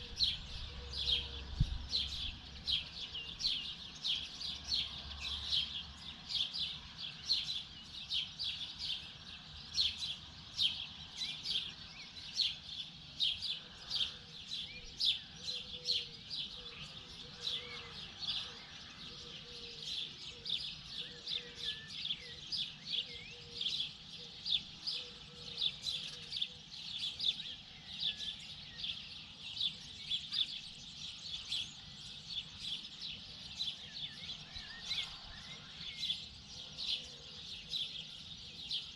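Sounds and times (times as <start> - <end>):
birds chirping chorus: 0.0 - 38.9.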